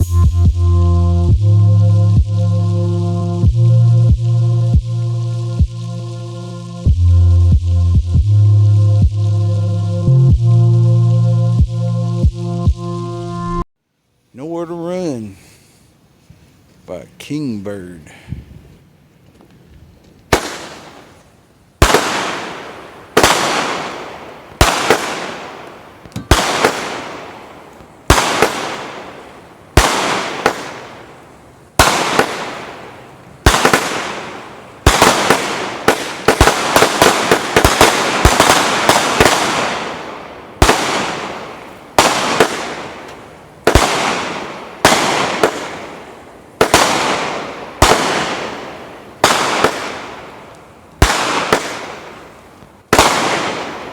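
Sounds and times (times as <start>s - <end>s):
fireworks bangs: 20.3s - 21.2s, 21.8s - 52.3s, 52.9s - 53.9s.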